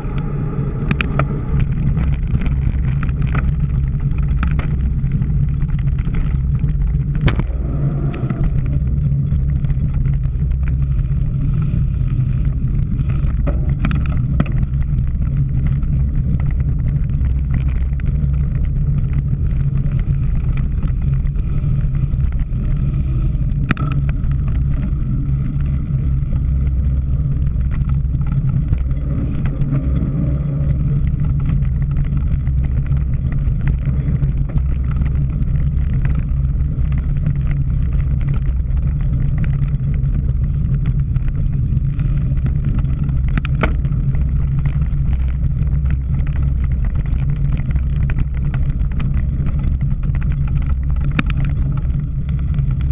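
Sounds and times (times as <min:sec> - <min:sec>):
wind and riding noise: 0:00.0 - 0:52.9
bike knocking over bumps: 0:12.7 - 0:21.1, 0:23.5 - 0:52.9.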